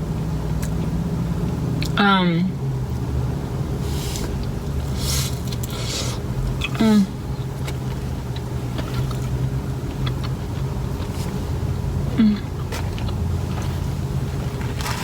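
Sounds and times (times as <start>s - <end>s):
person humming mm: 6.8s - 7.2s, 12.2s - 12.5s
chewing clicks: 7.5s - 11.4s, 12.6s - 13.2s.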